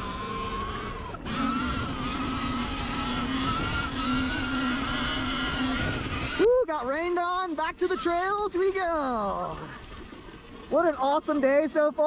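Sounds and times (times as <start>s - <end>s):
wind and trail rumble: 0.0s - 7.8s
electric motor whining: 0.0s - 10.7s.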